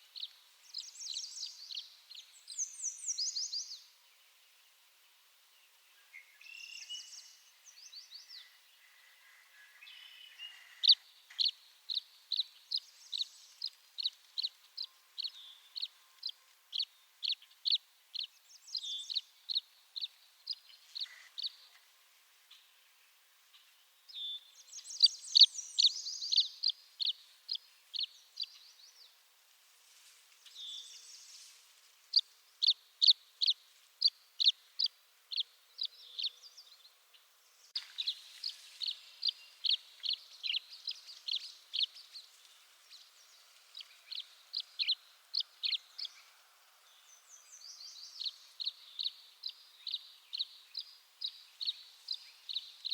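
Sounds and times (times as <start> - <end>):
swallows chirping: 24.1 - 29.1, 30.4 - 52.9.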